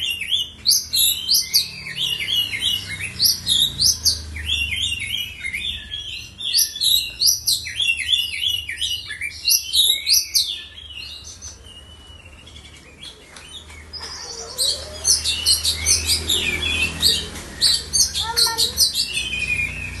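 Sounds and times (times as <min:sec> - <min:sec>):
bird singing chirps and whistles: 0:00.0 - 0:20.0.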